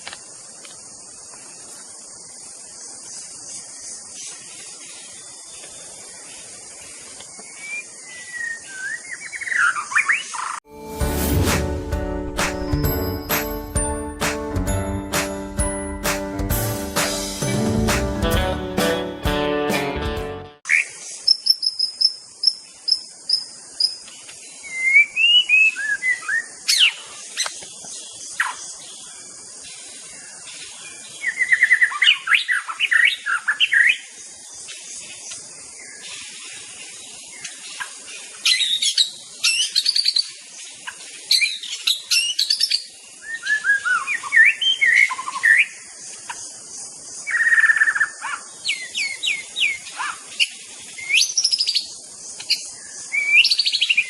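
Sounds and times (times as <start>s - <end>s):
steady high hiss: 0.0s - 19.2s, 20.7s - 54.0s
songbird whistles and trills: 7.4s - 10.6s, 24.6s - 27.0s.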